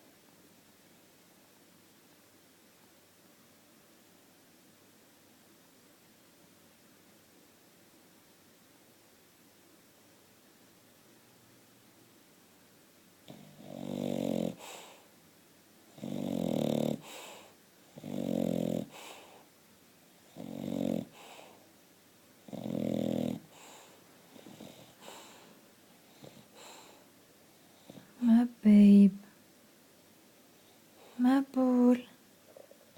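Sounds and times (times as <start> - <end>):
dog snoring: 13.2 - 15.0, 15.9 - 19.5, 20.3 - 21.6, 22.4 - 27.0
dog breathing softly: 14.5 - 15.1, 16.9 - 17.6, 18.3 - 19.5, 20.4 - 21.7, 22.5 - 28.2.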